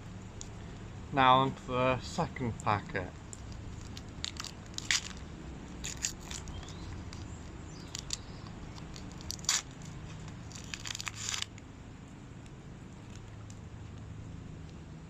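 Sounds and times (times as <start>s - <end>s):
wrapper tearing and crinkling: 3.4s - 5.2s, 5.8s - 11.6s.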